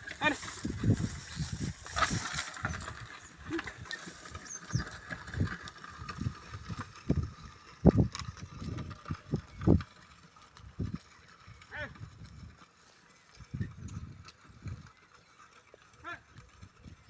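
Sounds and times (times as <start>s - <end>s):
hooves thudding on soil: 0.0s - 9.9s.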